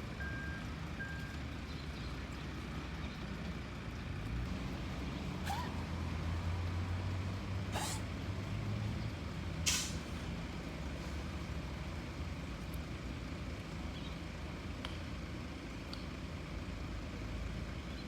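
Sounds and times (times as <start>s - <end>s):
low hum of traffic: 0.0s - 18.0s
deer sneezing: 5.4s - 6.0s, 7.7s - 8.1s, 9.7s - 10.0s.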